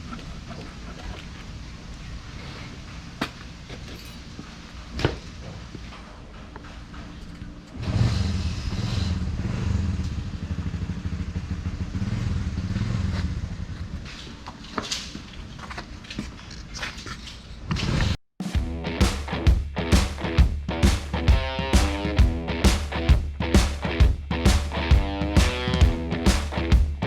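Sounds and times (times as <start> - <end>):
motorcycle engine running: 7.8 - 14.1, 18.6 - 27.0.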